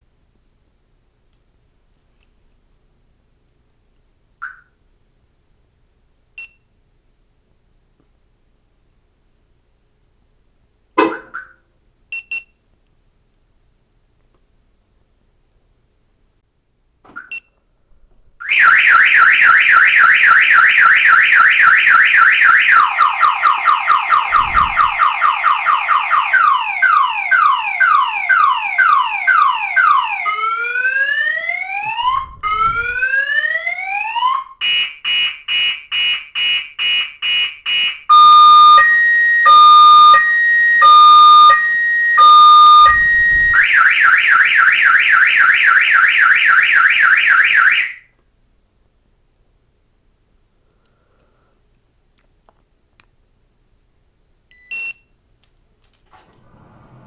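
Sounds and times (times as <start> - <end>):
car alarm siren cycling tones: 18.4 - 48.1.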